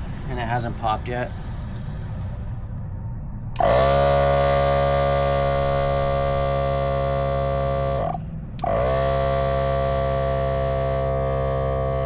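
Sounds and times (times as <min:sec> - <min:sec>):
electric air compressor whining: 0:03.6 - 0:12.0.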